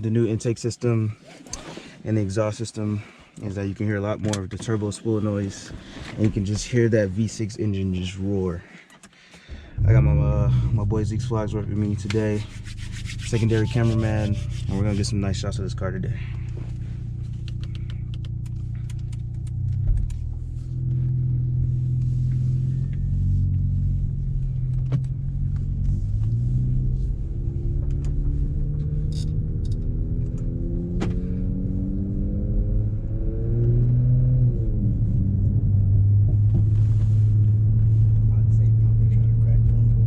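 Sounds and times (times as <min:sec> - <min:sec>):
car engine accelerating: 0:09.8 - 0:40.0.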